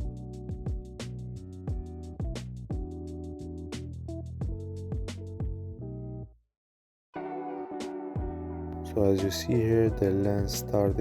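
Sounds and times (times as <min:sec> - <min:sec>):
kick drum: 0:00.0 - 0:01.0, 0:01.7 - 0:03.0, 0:04.4 - 0:05.6, 0:08.2 - 0:08.4, 0:09.9 - 0:11.0.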